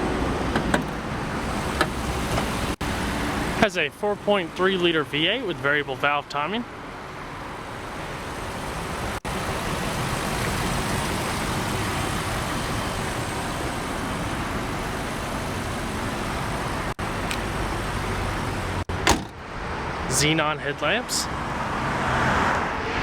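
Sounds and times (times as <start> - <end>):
car engine idling: 1.2 - 5.8, 7.6 - 19.1.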